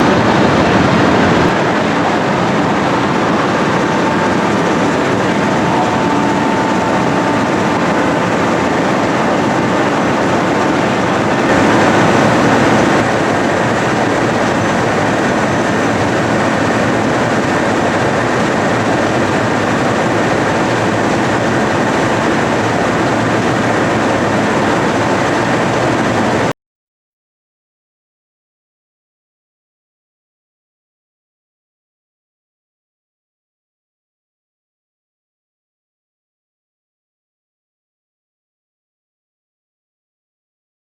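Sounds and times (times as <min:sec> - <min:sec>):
harvesting machinery running: 0:00.0 - 0:26.5.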